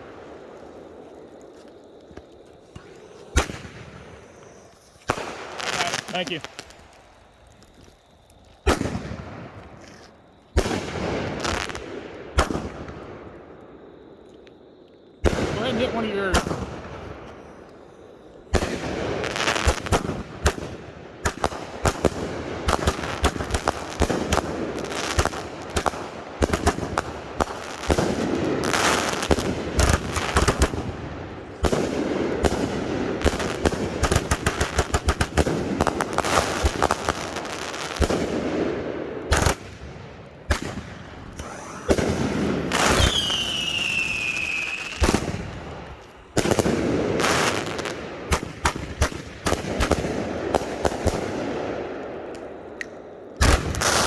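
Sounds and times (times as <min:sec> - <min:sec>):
firework cakes firing: 0:00.0 - 0:54.0
falling firework whistle: 0:01.6 - 0:06.8, 0:40.5 - 0:48.5.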